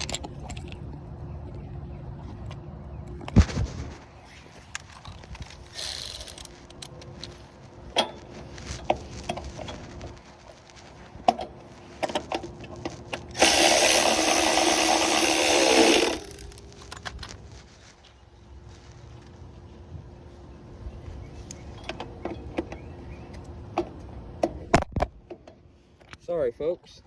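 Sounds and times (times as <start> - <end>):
tools clicking and knocking: 0.0 - 0.8, 4.8 - 7.3, 13.4 - 17.3
handheld power tool running: 5.7 - 6.5, 13.3 - 16.8.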